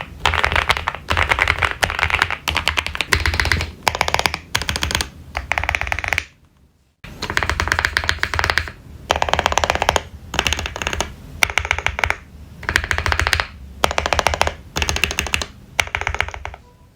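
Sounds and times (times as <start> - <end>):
mechanical keyboard typing: 0.0 - 6.4, 7.2 - 16.6.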